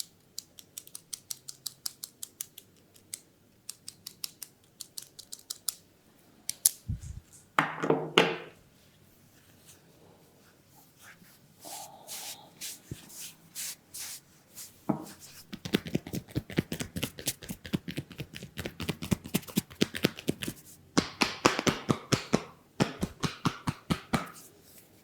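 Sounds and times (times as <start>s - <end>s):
hands tapping and patting: 14.9s - 24.5s.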